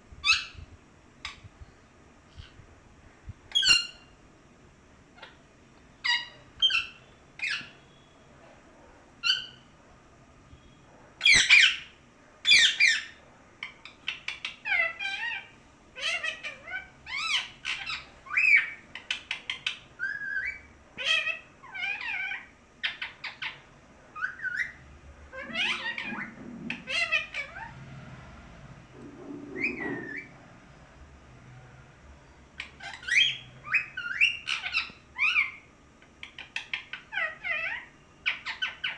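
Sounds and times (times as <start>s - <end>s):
parrot squawking and whistling: 13.8s - 23.6s, 24.2s - 27.7s, 29.0s - 30.4s, 32.6s - 38.9s.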